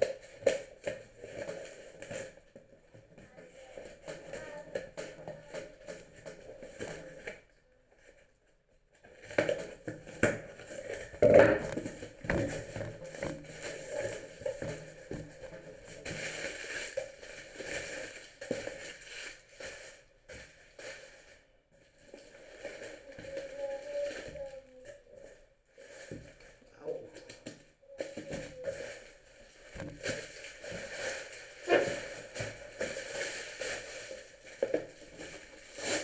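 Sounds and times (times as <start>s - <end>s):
packaging crinkling: 9.1s - 20.1s, 27.1s - 36.0s.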